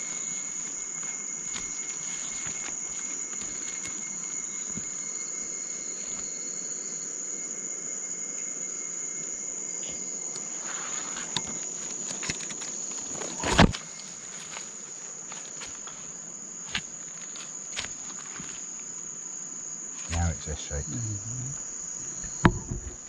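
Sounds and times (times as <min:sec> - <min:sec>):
rustles and clicks: 0:00.0 - 0:05.1, 0:10.4 - 0:18.7
insect chorus trilling: 0:00.0 - 0:23.0.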